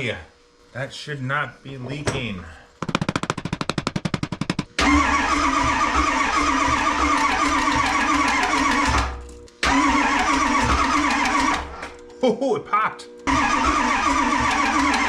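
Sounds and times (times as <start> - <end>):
engine cranking without starting: 4.8 - 11.8, 13.3 - 15.0.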